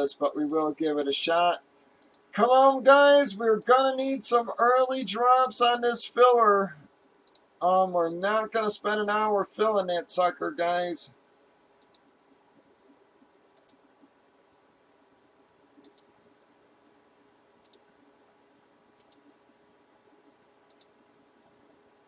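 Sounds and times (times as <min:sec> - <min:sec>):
computer mouse double-clicks: 0:07.2 - 0:07.5, 0:11.8 - 0:12.1, 0:13.5 - 0:13.8, 0:15.8 - 0:16.1, 0:17.6 - 0:17.8, 0:19.0 - 0:19.3, 0:20.7 - 0:20.9.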